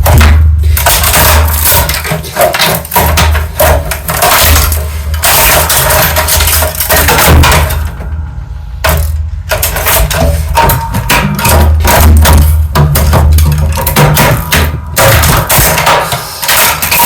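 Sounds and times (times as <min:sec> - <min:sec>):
knocks and rattles: 0:00.0 - 0:17.0.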